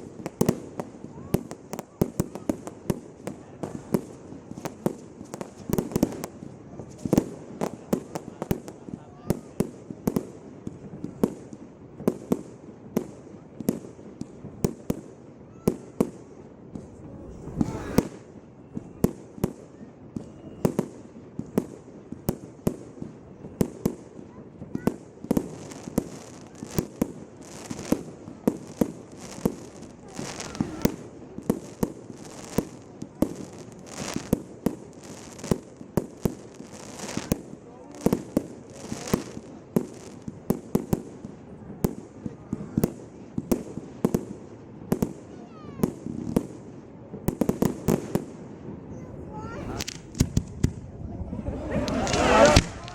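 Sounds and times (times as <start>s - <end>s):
small fireworks pops: 0.0s - 52.9s
fireworks sharp bangs: 16.0s - 19.5s, 24.7s - 37.4s, 49.0s - 52.9s
firework shells banging: 49.5s - 50.7s, 51.5s - 52.9s.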